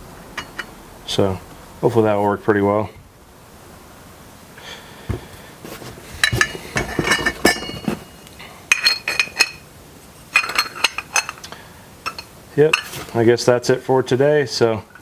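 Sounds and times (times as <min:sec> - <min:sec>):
metal parts clinking: 0:06.2 - 0:09.6, 0:10.3 - 0:13.2.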